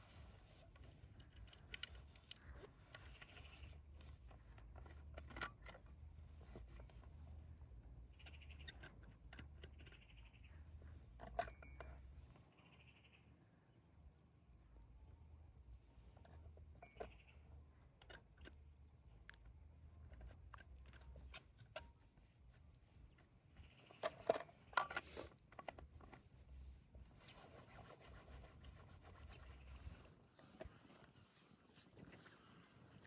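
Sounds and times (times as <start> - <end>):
rustling and scraping: 0.0 - 12.6, 19.4 - 33.0
small handling clicks: 0.0 - 12.7, 16.0 - 28.4.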